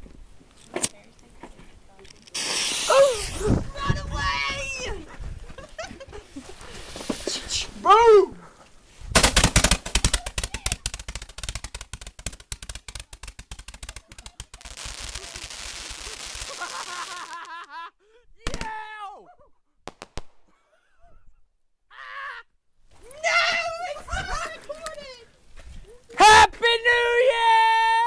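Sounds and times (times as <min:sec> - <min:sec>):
firework crackling hiss: 0:02.3 - 0:03.9, 0:06.6 - 0:07.8, 0:09.1 - 0:17.5
firework shots firing rapidly: 0:02.4 - 0:03.6, 0:09.1 - 0:16.8, 0:18.4 - 0:18.8, 0:19.9 - 0:20.4.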